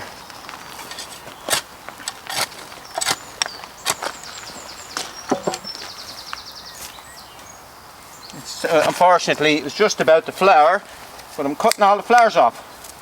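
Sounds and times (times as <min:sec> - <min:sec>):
secateurs snipping stems: 0:00.9 - 0:04.2, 0:11.2 - 0:12.3.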